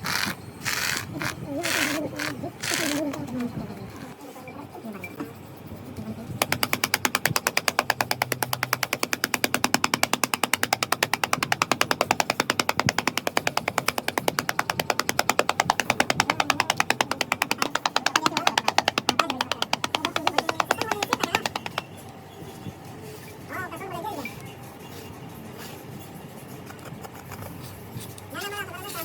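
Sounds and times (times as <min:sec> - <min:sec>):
machine knocking: 0:06.4 - 0:21.9.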